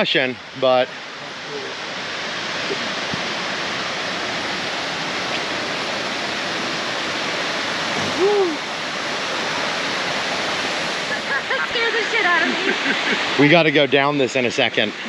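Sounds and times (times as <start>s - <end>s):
waterfall rushing: 0.0s - 15.0s
short rising and falling call: 8.0s - 8.7s.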